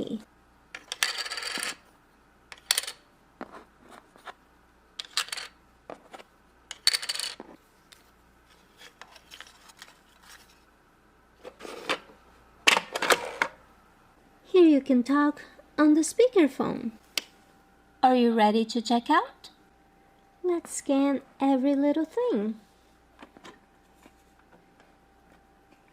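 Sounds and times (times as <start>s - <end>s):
toy coins clinking: 0.8s - 1.8s, 2.5s - 3.0s, 5.0s - 5.6s, 6.7s - 7.4s.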